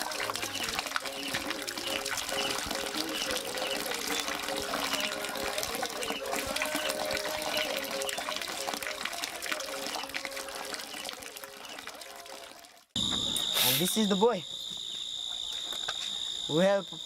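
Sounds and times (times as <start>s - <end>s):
water rushing: 0.0s - 12.0s
short high chirps: 13.3s - 15.1s.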